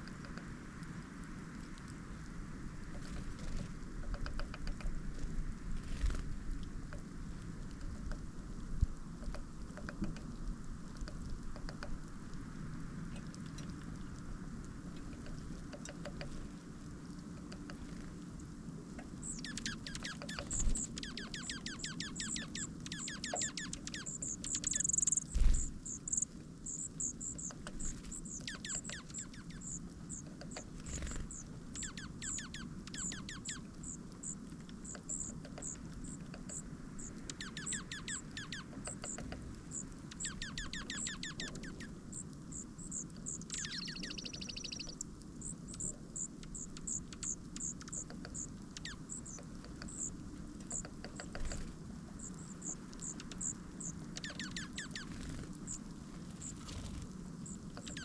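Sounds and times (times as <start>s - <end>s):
steady low hum: 0.0s - 58.0s
small birds high-pitched calls: 19.1s - 58.0s.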